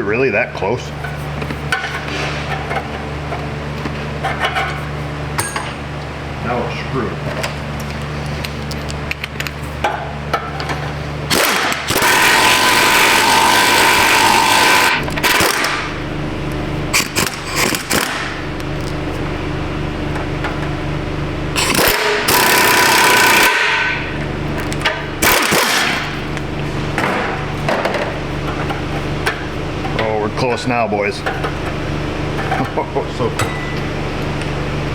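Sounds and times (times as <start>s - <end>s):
steady low hum: 0.0s - 34.9s
impact wrench hammering: 11.3s - 15.9s, 16.9s - 18.4s, 21.6s - 24.2s, 24.8s - 26.2s.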